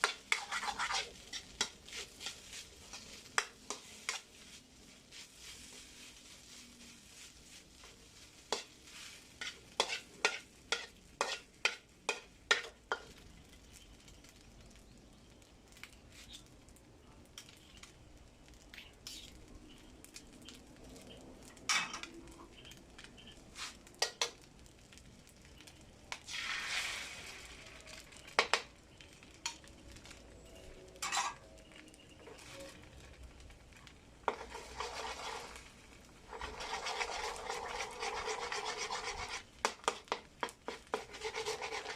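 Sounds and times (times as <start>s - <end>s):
spatula scraping frying pan: 0.0s - 13.0s, 31.0s - 31.5s, 33.8s - 41.9s
rice sizzling: 0.0s - 41.9s.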